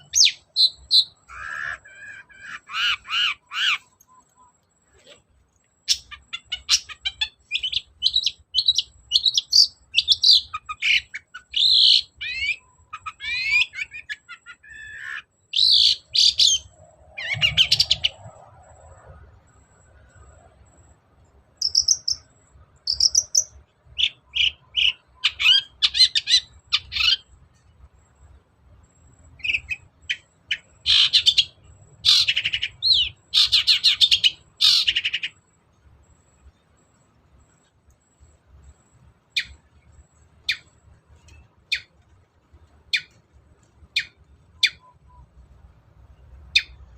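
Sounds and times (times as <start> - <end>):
shrike singing: 5.8 - 27.3.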